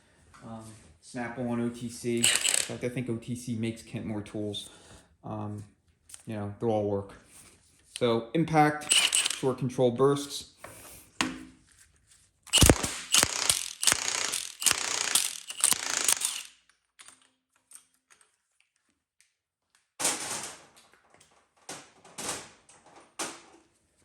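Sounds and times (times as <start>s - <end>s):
impact wrench hammering: 2.2s - 2.8s, 8.9s - 9.5s, 12.5s - 16.5s
metallic clatters: 8.9s - 9.5s.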